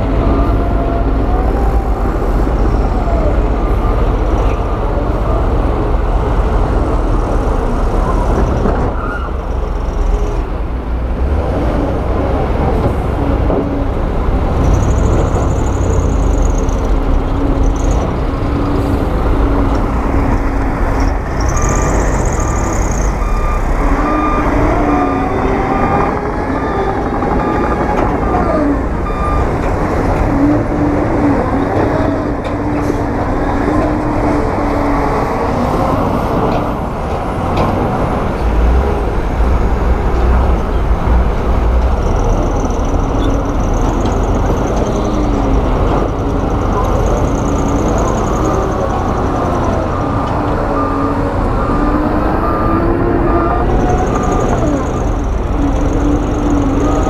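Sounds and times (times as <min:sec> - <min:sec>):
diesel construction machinery engines: 0:00.0 - 0:57.0
reversing alarm beeping: 0:21.2 - 0:28.3, 0:29.0 - 0:29.6, 0:47.2 - 0:57.0.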